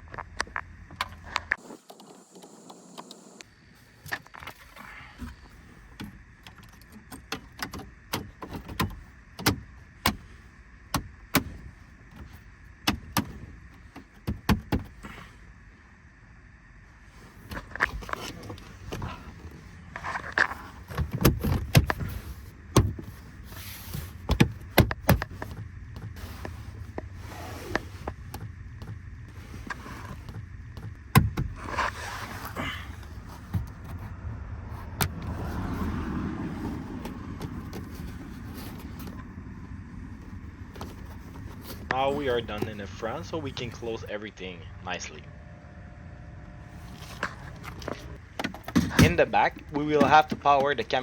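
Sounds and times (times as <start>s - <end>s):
low steady hum: 3.4s - 51.0s
plastic dashboard trim clicks: 20.4s - 23.2s, 24.1s - 27.1s, 27.7s - 31.9s, 36.5s - 39.3s.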